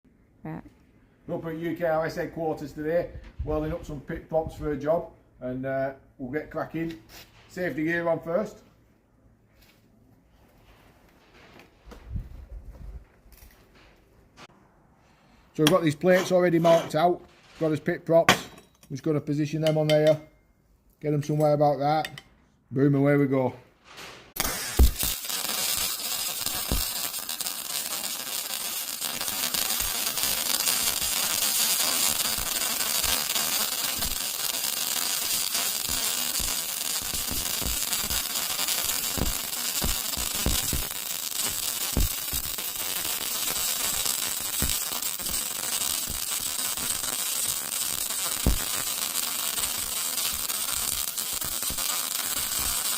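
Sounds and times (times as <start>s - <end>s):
sharp welding pops: 24.0s - 52.9s
electric arc welding hiss: 24.4s - 52.9s.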